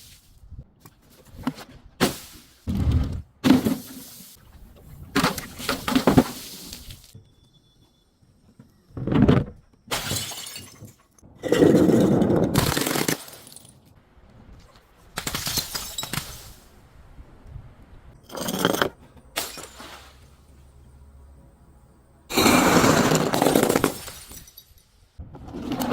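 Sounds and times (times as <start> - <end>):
glass bottles shattering: 9.9 - 11.0, 11.7 - 13.8, 15.2 - 16.4, 18.3 - 20.2, 23.0 - 25.0.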